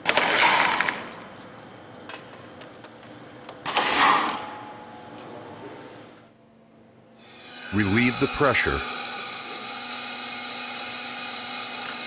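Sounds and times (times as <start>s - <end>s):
power tool bursts: 7.2s - 12.0s.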